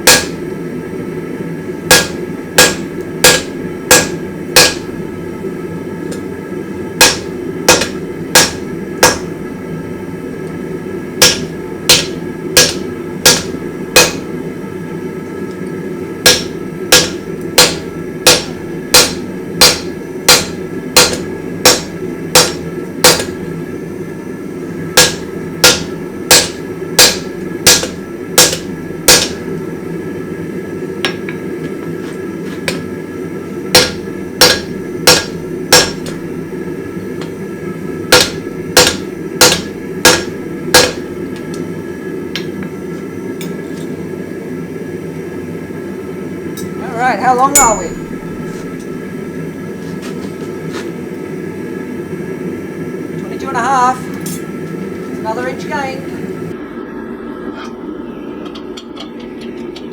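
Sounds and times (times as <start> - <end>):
hammer striking hot steel: 0.0 - 0.4, 1.9 - 5.0, 7.0 - 9.4, 11.2 - 14.3, 16.2 - 23.5, 25.0 - 29.6, 31.0 - 32.9, 33.7 - 36.3, 37.0 - 41.6, 42.3 - 42.7, 47.4 - 49.0
steady low rumble: 1.7 - 42.3, 45.9 - 59.9.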